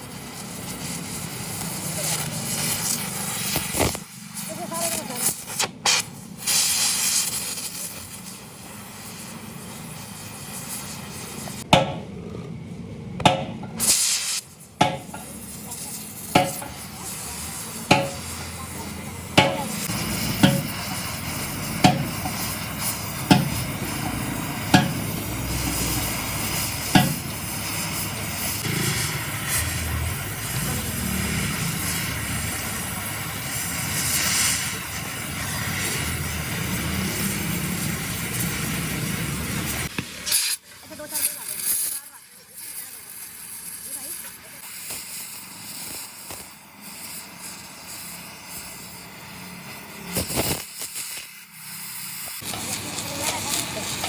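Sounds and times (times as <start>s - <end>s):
hammer striking metal: 11.7s - 12.2s, 13.2s - 13.8s, 14.8s - 15.4s, 16.3s - 16.9s, 17.9s - 18.6s, 19.3s - 25.2s, 26.5s - 27.8s
steady hiss: 13.7s - 54.0s.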